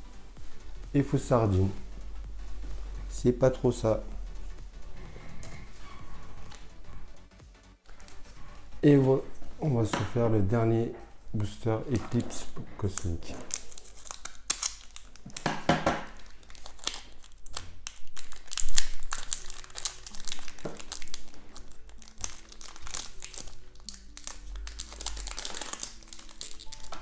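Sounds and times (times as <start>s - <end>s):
soft music of held notes: 0.0s - 13.9s, 18.2s - 27.0s
foil wrapper crinkling: 7.8s - 27.0s.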